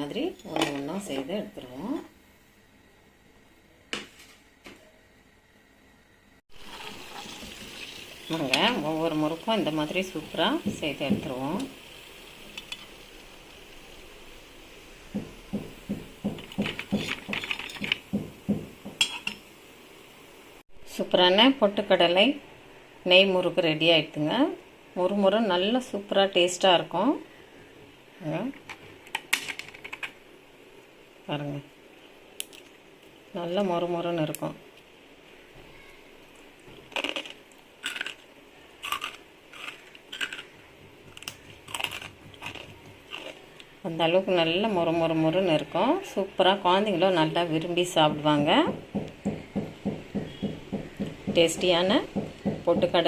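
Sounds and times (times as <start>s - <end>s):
hot oil sizzling: 6.5s - 22.4s
crunching of crisp fried snack: 36.7s - 43.7s.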